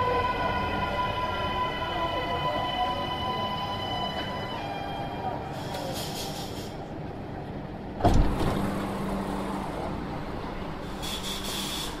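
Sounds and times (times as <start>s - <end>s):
train cabin rumble: 3.8s - 12.0s.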